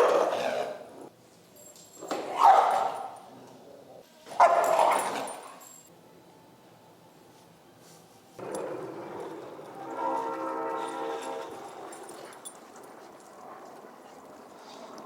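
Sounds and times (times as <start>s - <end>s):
dog barking: 2.3s - 3.3s, 4.4s - 5.6s.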